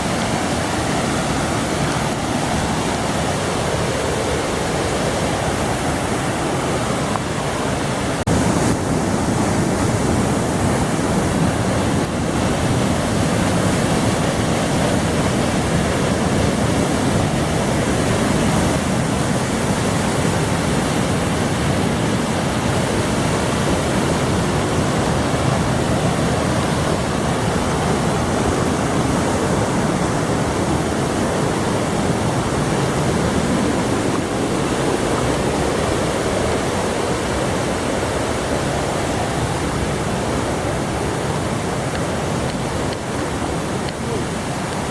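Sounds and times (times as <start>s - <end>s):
waterfall roaring: 0.0s - 44.9s.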